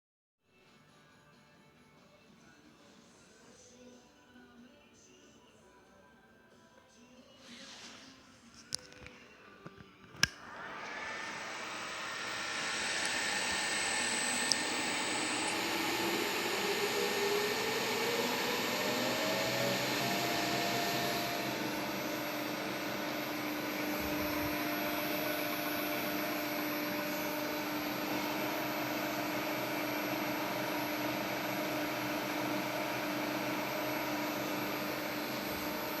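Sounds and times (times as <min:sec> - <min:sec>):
spindle drive whine: 0:10.2 - 0:36.0.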